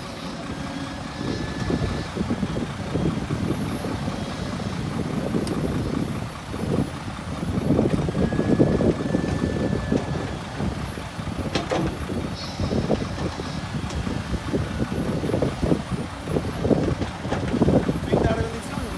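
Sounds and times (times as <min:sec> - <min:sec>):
diesel machinery rumbling: 0:00.0 - 0:18.9
knocks and clatter: 0:11.4 - 0:12.2, 0:16.7 - 0:17.9.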